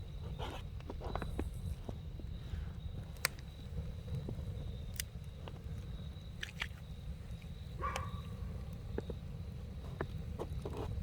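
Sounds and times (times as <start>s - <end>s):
campfire burning: 0.0s - 11.0s
wood crackling and popping: 0.0s - 11.0s.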